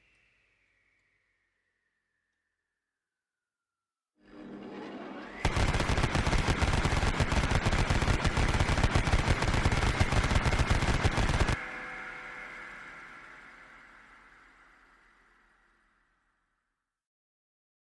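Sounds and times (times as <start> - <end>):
short rising whine: 4.2 - 16.3
rapid automatic gunfire: 5.4 - 11.6.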